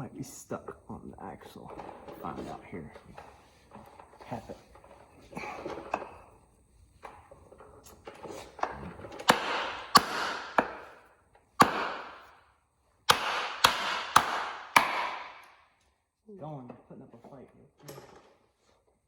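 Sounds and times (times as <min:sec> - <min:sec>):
hammer striking metal axle: 0:09.2 - 0:11.0, 0:13.1 - 0:15.6.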